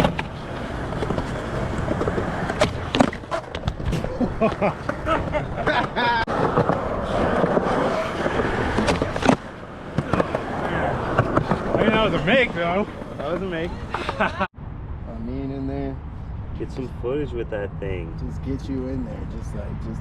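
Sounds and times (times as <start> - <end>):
skateboard clacks: 0.0 - 14.4
skateboard wheels rolling on concrete: 0.0 - 14.5.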